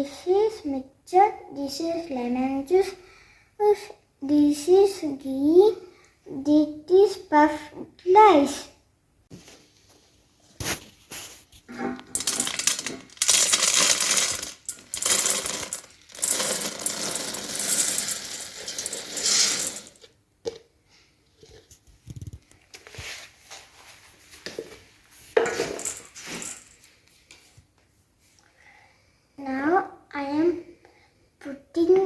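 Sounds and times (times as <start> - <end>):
puffed rice pouring into metal bowl: 12.1 - 20.1, 25.6 - 26.7.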